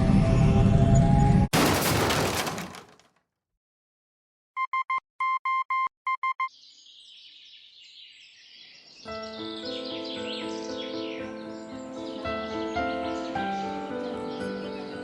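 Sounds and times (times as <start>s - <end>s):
electronic beeps in morse code: 4.6s - 6.5s
faint birdsong: 6.4s - 15.0s
music: 9.0s - 15.0s.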